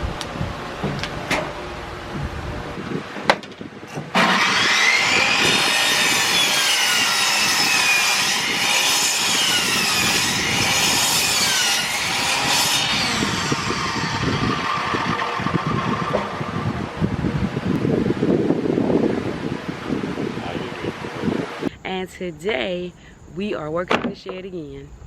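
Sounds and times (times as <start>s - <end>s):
power saw cutting wood: 3.9s - 16.8s.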